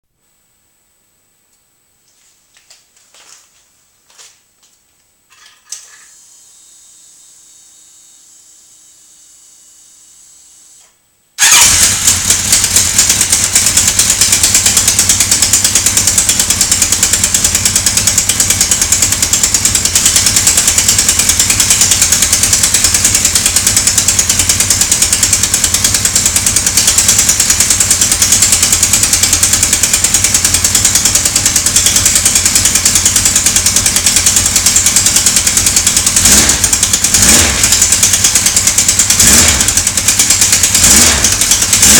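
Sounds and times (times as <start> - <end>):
motorcycle engine running: 11.4 - 41.9.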